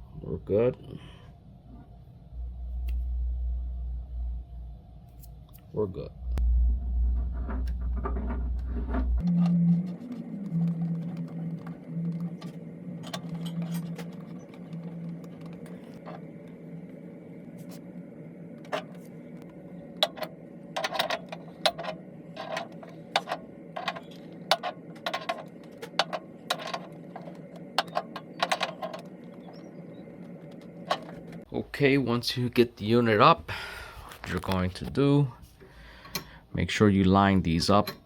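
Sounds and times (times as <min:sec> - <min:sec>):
steady low hum: 0:00.0 - 0:38.0
metal parts clicking and knocking: 0:20.0 - 0:29.1.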